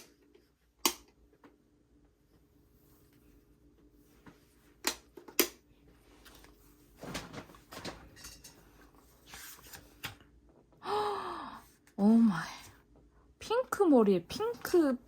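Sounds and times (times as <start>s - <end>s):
pages rustling: 6.1s - 10.2s.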